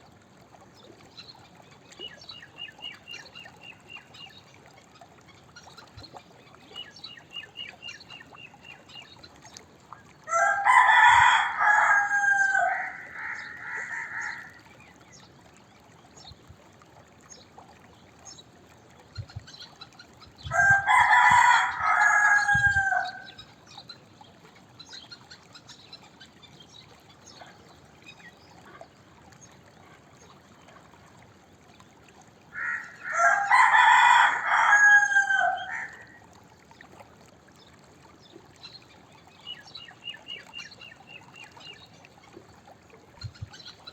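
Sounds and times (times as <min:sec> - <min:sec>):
rooster crowing: 0:10.3 - 0:14.6, 0:20.5 - 0:23.3, 0:32.6 - 0:36.2.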